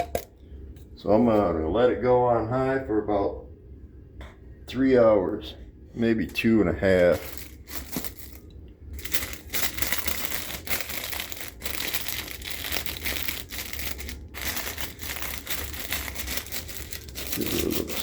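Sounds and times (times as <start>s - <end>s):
plastic crinkling and rustling: 7.1s - 8.4s, 9.0s - 18.0s.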